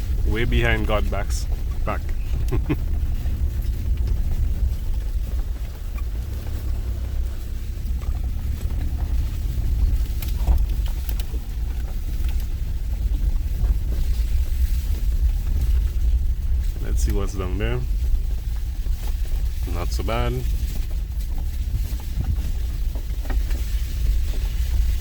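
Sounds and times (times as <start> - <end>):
faint knocks and rattles: 0.0 - 25.0
vehicle rumbling on rough track: 0.0 - 25.0.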